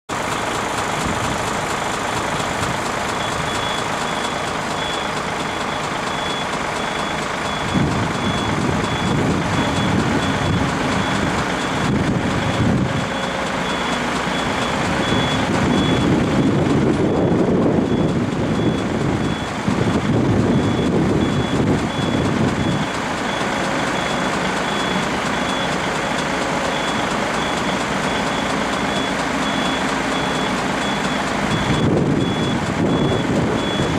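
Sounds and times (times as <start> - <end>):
truck engine running: 0.1 - 33.9
truck reversing alarm beeping: 0.1 - 33.9.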